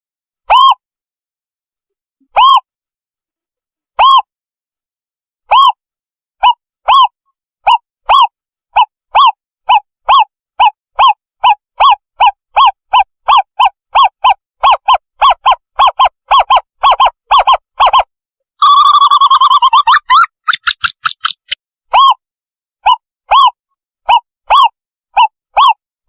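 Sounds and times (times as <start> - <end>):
fast owl trill: 6.4 - 7.1, 7.7 - 22.2, 22.8 - 25.8.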